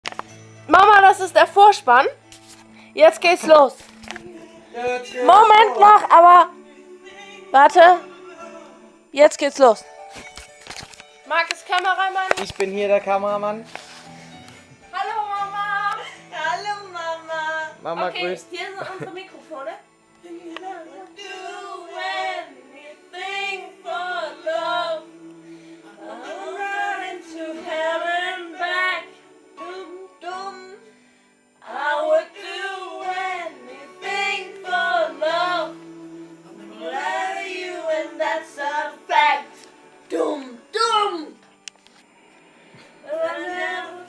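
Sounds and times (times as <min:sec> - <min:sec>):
backing music: 0:00.0 - 0:44.0
girls singing into microphones: 0:20.2 - 0:30.8, 0:31.6 - 0:40.5, 0:43.0 - 0:44.0.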